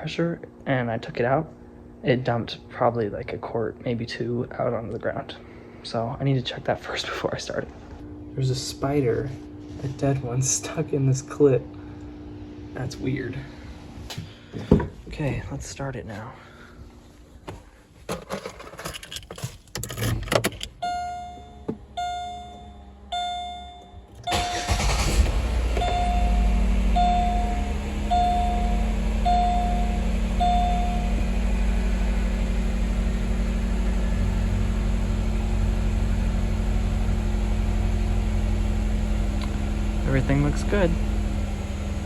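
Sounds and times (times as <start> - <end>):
car engine cranking and idling: 6.3 - 42.0
car warning chime dinging: 20.8 - 31.3.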